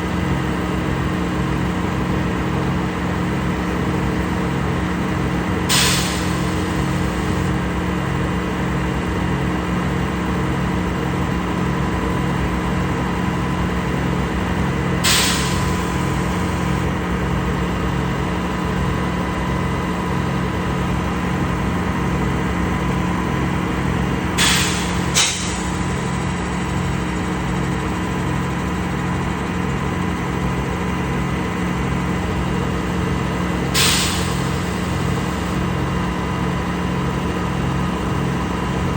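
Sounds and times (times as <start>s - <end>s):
concrete pump engine pulsing: 0.0s - 38.9s.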